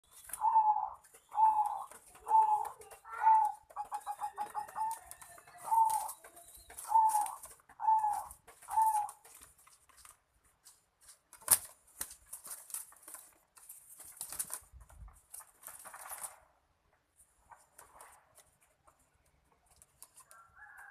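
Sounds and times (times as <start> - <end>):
doves cooing: 0.1 - 9.4.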